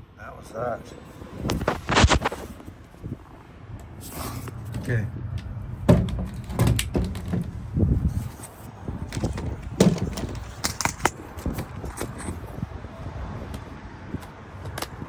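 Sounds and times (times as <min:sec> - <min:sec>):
sharp knocks: 0:05.9 - 0:07.6
tools clicking and rattling: 0:08.3 - 0:12.4.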